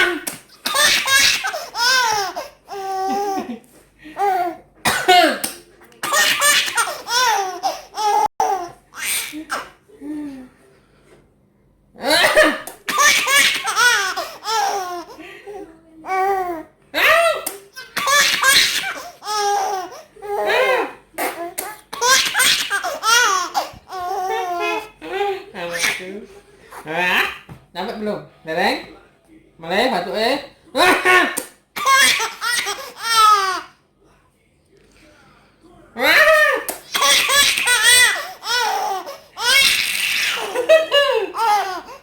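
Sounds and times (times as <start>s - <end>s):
baby laughing: 0.0s - 3.6s, 6.0s - 9.7s, 12.2s - 15.2s, 17.0s - 25.0s, 30.8s - 33.7s, 36.5s - 42.0s.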